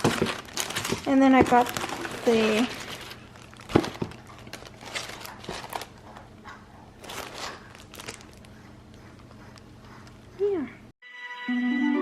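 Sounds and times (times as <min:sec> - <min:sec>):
paper rustling: 0:00.0 - 0:06.0, 0:07.0 - 0:08.5.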